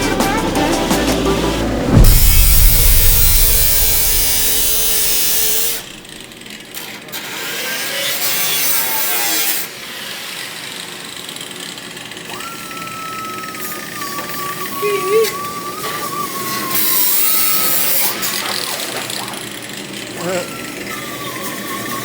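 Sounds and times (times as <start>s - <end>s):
steady high whine: 0.3s - 6.2s
power tool hissing: 1.8s - 6.2s.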